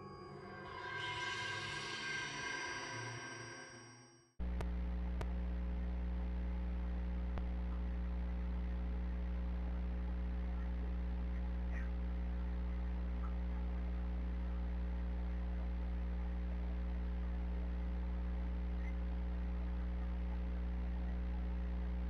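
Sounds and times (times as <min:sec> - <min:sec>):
electrical mains hum: 0:04.4 - 0:22.0.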